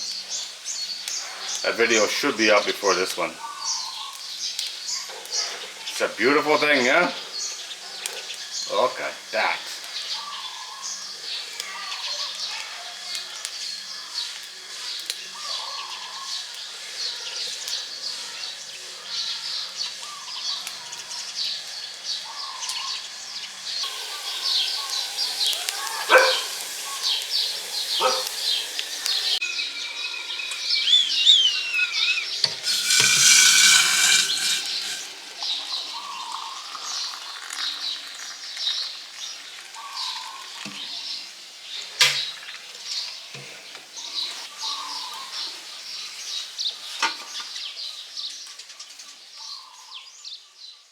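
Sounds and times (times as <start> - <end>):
small birds chirping: 0.0 - 50.9
loud hiss: 19.4 - 36.4
pots or cutlery clinking: 32.5 - 35.3.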